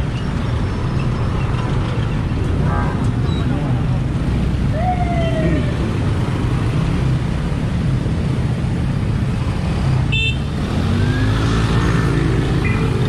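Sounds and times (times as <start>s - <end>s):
roadside traffic rumble: 0.0s - 13.0s
vehicle passing by: 9.4s - 13.0s.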